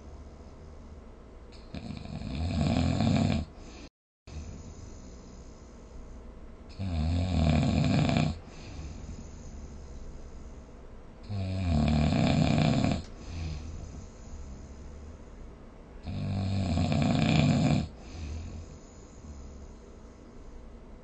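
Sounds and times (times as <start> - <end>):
quiet breathing: 0.0 - 2.2, 3.1 - 7.0, 7.8 - 21.0
person snoring: 1.6 - 3.7, 6.7 - 10.0, 11.2 - 15.2, 16.0 - 19.8.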